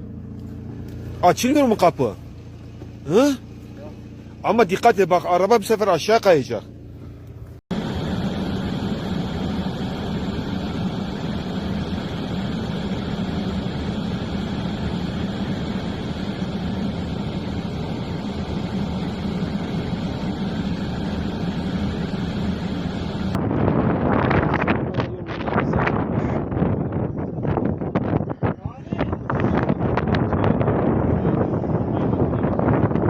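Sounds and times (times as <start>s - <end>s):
engine humming: 0.0s - 25.2s.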